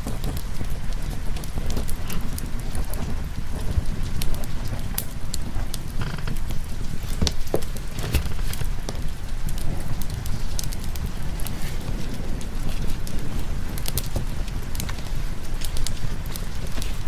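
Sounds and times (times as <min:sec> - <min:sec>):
rain hiss: 0:00.0 - 0:17.0
wood fire crackling: 0:00.0 - 0:17.0
low rumble: 0:08.7 - 0:17.0.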